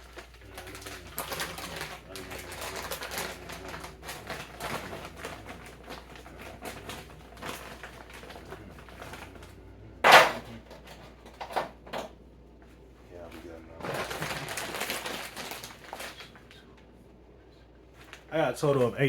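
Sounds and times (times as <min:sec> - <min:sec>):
kitchen clicking and clattering: 0:10.0 - 0:12.2.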